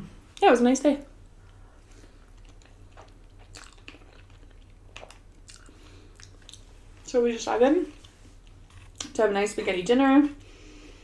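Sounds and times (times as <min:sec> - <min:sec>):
person chewing food: 0:01.4 - 0:07.0, 0:07.9 - 0:09.0.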